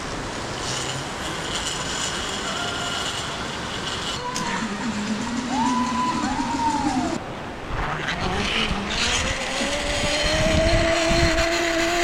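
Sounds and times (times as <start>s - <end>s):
zipline pulleys whining on cable: 0.0s - 12.0s
wind rumble on microphone: 5.5s - 12.0s.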